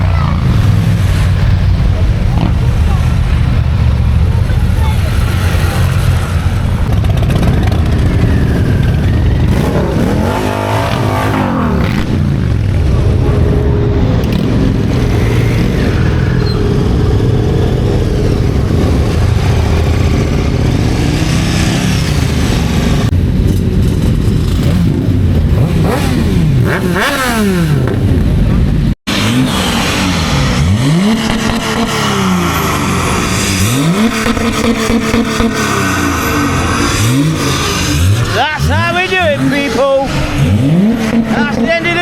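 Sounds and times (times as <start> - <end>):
motorcycles and traffic passing: 0.0 - 42.0
motorcycle revving past: 4.5 - 23.1.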